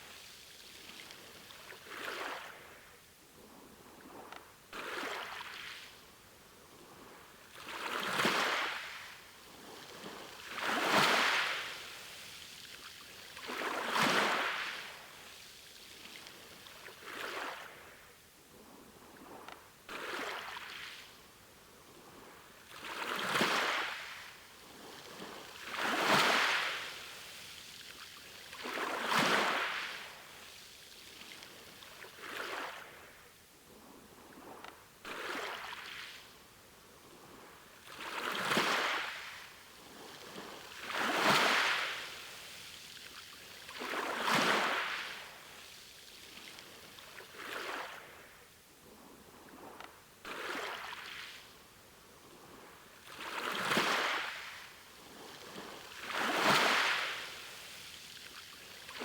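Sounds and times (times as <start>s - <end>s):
sea waves washing on shore: 6.8s - 18.0s, 21.9s - 33.2s, 36.8s - 48.4s, 52.0s - 59.0s.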